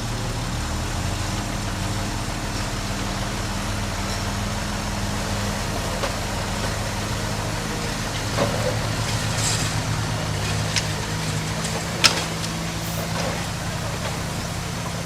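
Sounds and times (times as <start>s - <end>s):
heavy diesel engine running: 0.0s - 15.0s.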